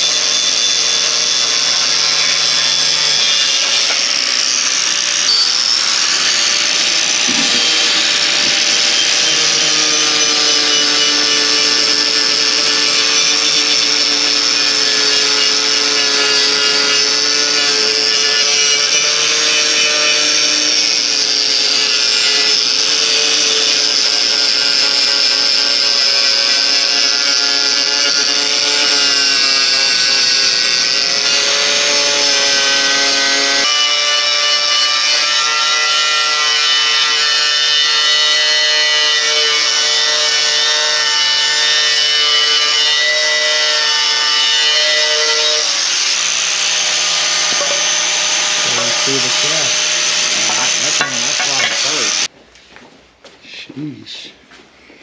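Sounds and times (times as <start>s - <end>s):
power grinder whining: 0.0s - 52.3s.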